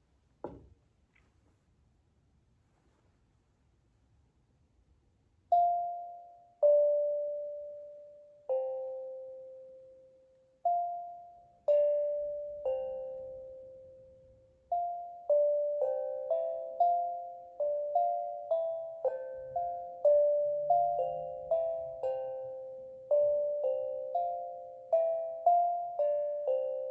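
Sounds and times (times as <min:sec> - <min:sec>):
steel tongue drum notes: 0:10.6 - 0:26.9.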